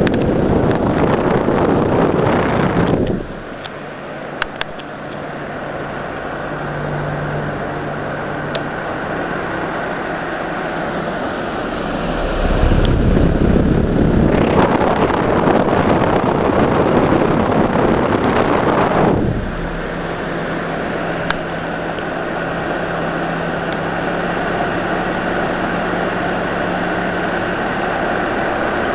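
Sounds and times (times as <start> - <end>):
wind buffeting microphone: 0.0 - 3.6, 11.2 - 22.2
pedestal fan running: 0.0 - 28.9.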